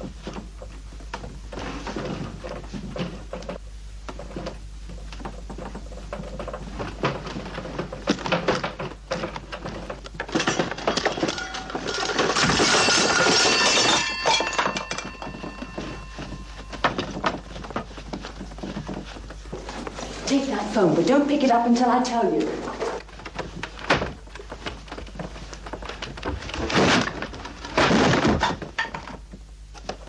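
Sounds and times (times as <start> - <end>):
tools and parts clattering: 5.3 - 20.0
ringing metallic tones: 11.0 - 17.1.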